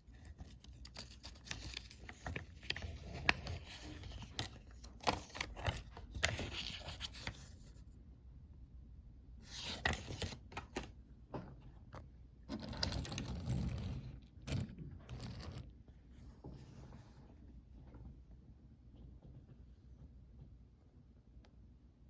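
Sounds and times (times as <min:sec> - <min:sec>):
rustling and scraping of packaging: 0:00.0 - 0:07.8.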